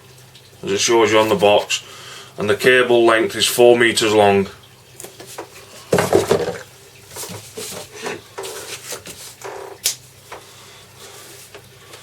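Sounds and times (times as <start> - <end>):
plastic handling and rustling: 5.0 - 10.4.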